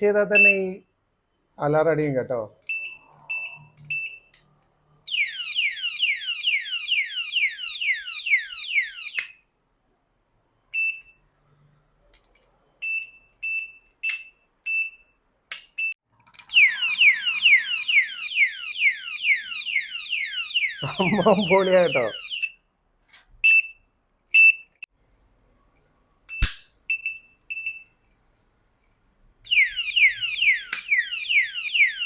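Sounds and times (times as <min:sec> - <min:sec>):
alarm padlock beeps: 0:00.4 - 0:00.6, 0:02.7 - 0:04.3, 0:05.1 - 0:09.3, 0:12.8 - 0:15.0, 0:15.8 - 0:22.6, 0:23.2 - 0:24.9, 0:26.2 - 0:28.0, 0:28.9 - 0:32.0
siren falling sweeps: 0:05.1 - 0:09.2, 0:16.5 - 0:22.4, 0:29.5 - 0:32.0
padlock clicks: 0:26.3 - 0:26.7, 0:30.5 - 0:32.0.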